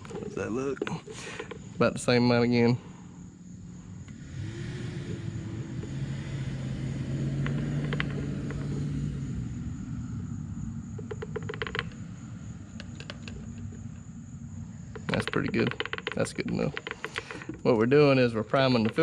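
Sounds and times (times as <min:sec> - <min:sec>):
vehicle engine passing by: 0:04.0 - 0:11.1.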